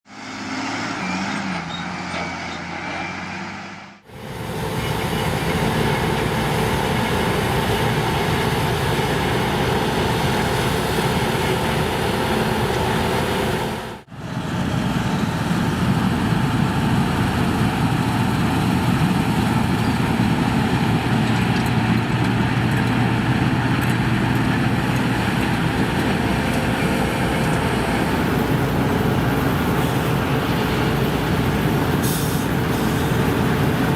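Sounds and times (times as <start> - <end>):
combine harvesters running: 0.1 - 33.9.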